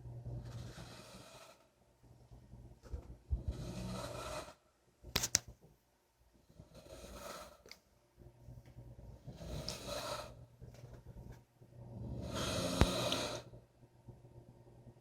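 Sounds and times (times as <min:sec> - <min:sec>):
person snoring: 0:00.3 - 0:01.6, 0:03.4 - 0:04.6, 0:09.3 - 0:10.4, 0:11.9 - 0:13.6.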